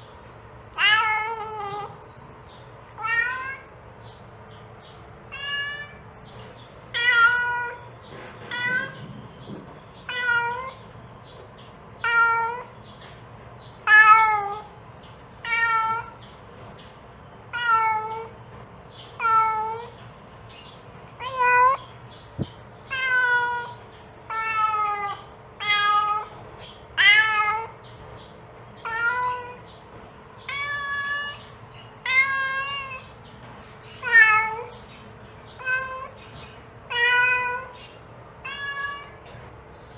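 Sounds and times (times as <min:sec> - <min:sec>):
cat meowing: 0:00.8 - 0:02.0, 0:02.9 - 0:03.7, 0:05.3 - 0:06.1, 0:06.9 - 0:07.9, 0:08.5 - 0:09.1, 0:10.0 - 0:10.8, 0:12.0 - 0:12.8, 0:13.8 - 0:14.8, 0:15.4 - 0:16.2, 0:17.5 - 0:18.4, 0:19.2 - 0:20.0, 0:22.8 - 0:27.8, 0:28.8 - 0:29.6, 0:30.4 - 0:33.1, 0:34.0 - 0:34.7, 0:35.5 - 0:36.2, 0:36.9 - 0:37.8, 0:38.4 - 0:39.3.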